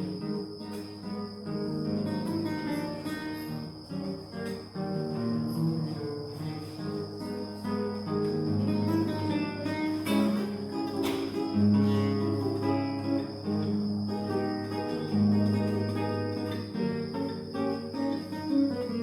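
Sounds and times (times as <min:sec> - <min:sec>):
acoustic guitar playing: 0:00.0 - 0:19.0
insects chirring: 0:00.0 - 0:19.0.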